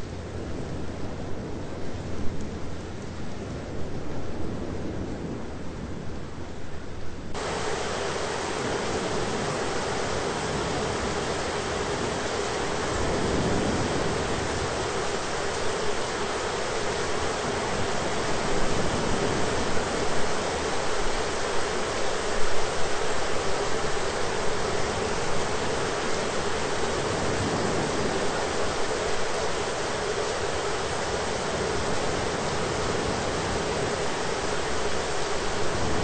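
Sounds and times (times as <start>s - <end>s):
heavy rain hissing: 7.3s - 36.0s.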